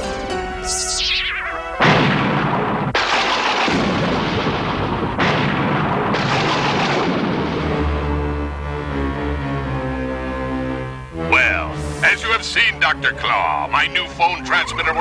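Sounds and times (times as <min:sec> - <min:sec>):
cartoon explosions: 0:00.6 - 0:08.4, 0:11.2 - 0:15.0.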